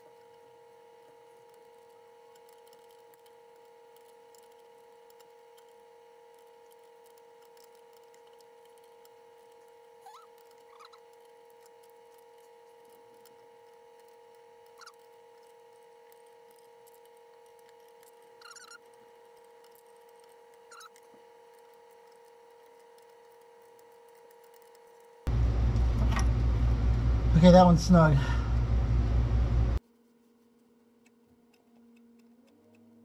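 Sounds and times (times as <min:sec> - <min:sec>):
faint squeaks and clicks: 0:00.0 - 0:25.2, 0:30.0 - 0:33.0
faint electrical hum: 0:00.0 - 0:33.0.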